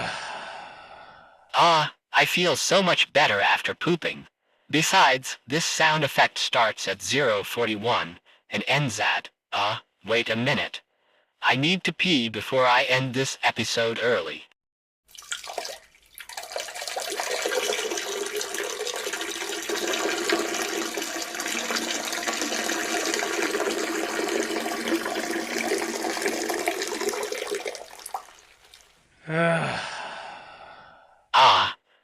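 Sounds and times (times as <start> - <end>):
person sighing: 0.0 - 1.4, 29.2 - 31.9
urine splashing into toilet water: 15.1 - 29.0.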